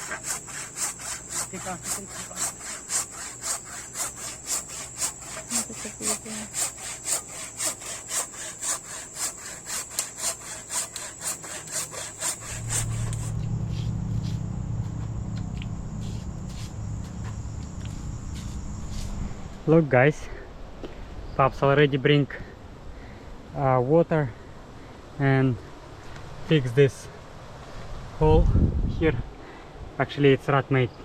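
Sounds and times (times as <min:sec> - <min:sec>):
hand saw cutting branch: 0:00.0 - 0:13.4
steady low hum: 0:00.0 - 0:20.7.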